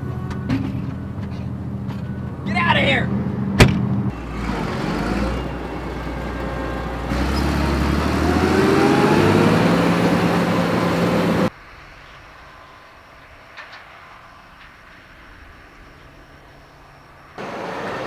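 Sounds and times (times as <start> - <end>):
combine harvester engine: 0.1 - 11.5, 17.4 - 18.0.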